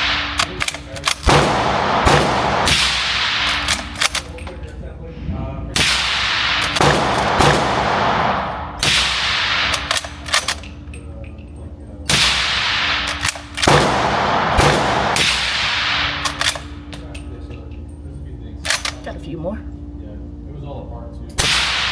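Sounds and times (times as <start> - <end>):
gunshot echo: 0.0 - 3.8, 5.8 - 10.0, 12.1 - 16.5, 21.4 - 21.9
suppressed rifle shots: 0.0 - 4.4, 5.8 - 10.7, 12.1 - 17.0, 21.4 - 21.9.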